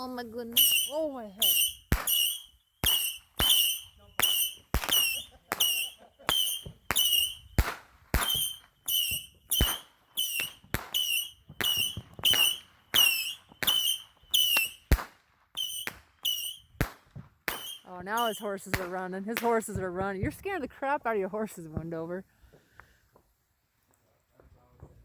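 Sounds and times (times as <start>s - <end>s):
firework whistling shots: 0.0s - 19.8s.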